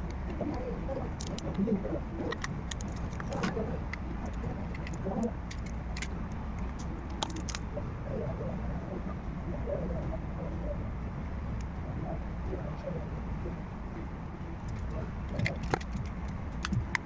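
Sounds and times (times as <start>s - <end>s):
small tools clicking and tapping: 0.0s - 1.6s, 2.3s - 7.6s, 14.6s - 17.0s
steady low hum: 0.0s - 17.0s.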